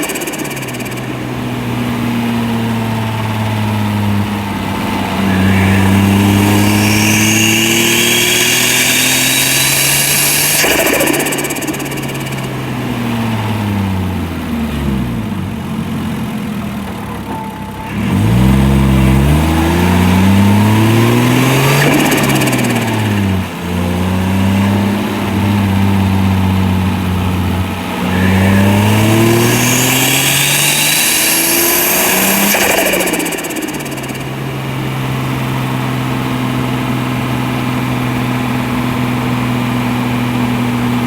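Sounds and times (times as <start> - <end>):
turbo whistle: 0.0 - 2.2, 5.0 - 13.3, 19.6 - 23.6, 28.0 - 34.9
car engine revving: 0.0 - 15.8, 17.9 - 35.6.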